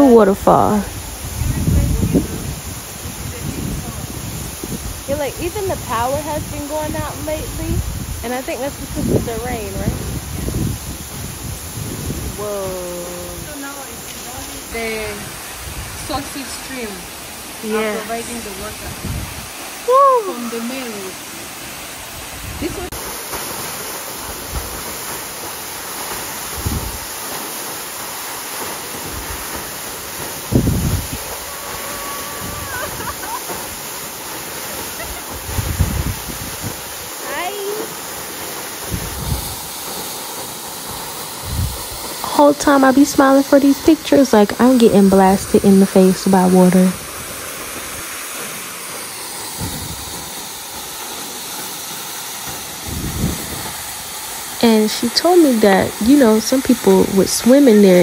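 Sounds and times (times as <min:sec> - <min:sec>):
waterfall rushing: 0:00.0 - 0:58.0
wind buffeting microphone: 0:00.2 - 0:17.1, 0:18.1 - 0:20.4, 0:22.0 - 0:23.0, 0:26.4 - 0:27.2, 0:29.0 - 0:34.0, 0:34.7 - 0:37.2, 0:38.8 - 0:39.9, 0:40.8 - 0:48.1, 0:49.5 - 0:50.4, 0:52.8 - 0:57.5.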